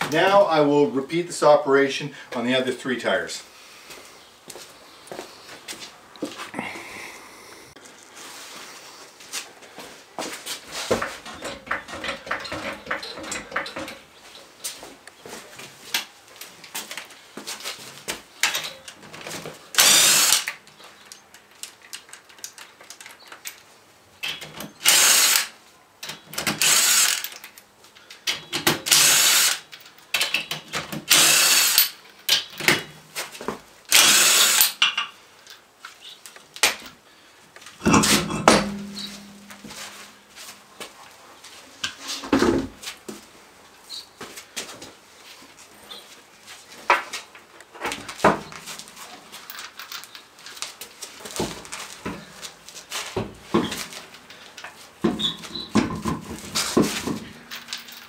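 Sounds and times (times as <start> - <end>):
power tool spinning lug nuts: 19.8 - 20.5, 24.8 - 25.5, 26.5 - 27.4, 28.9 - 29.7, 31.1 - 32.0, 33.9 - 34.8, 37.8 - 39.4.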